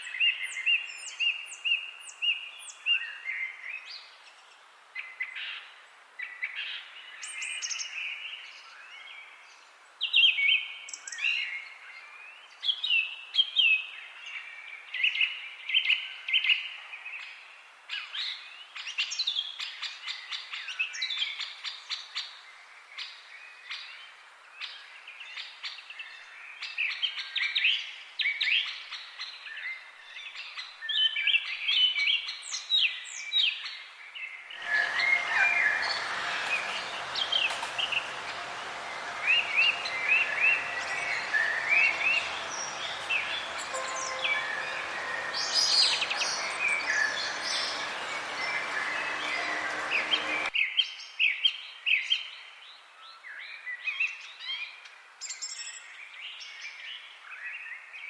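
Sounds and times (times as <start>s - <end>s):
noisy background ambience: 34.6s - 50.5s.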